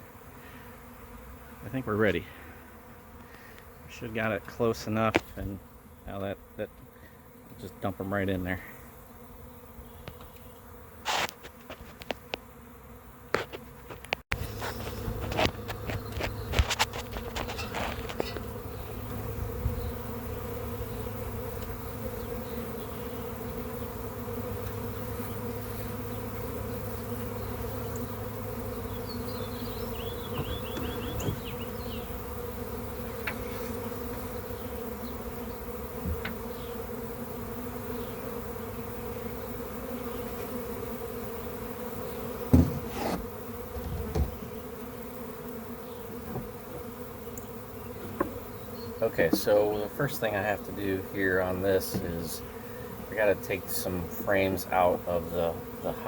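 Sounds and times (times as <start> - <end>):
honey bees buzzing: 0.0 - 56.0
sharp knocks and bumps: 30.3 - 31.6, 42.5 - 44.5.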